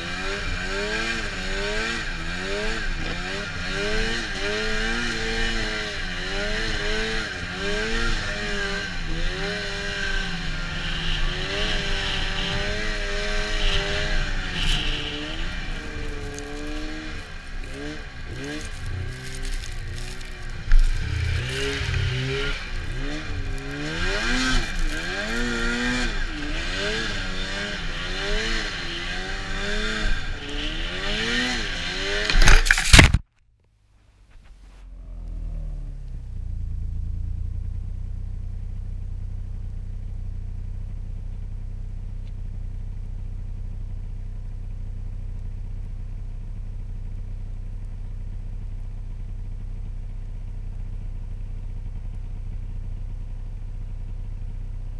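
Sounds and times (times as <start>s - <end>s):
snowmobile engine running at speed: 0.0s - 33.2s
snowmobile track noise: 0.0s - 33.2s
low muffled engine hum: 13.8s - 26.6s.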